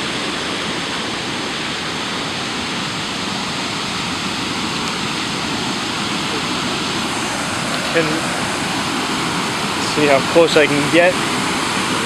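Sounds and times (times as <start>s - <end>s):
floodwater rushing over dam: 0.0s - 12.0s.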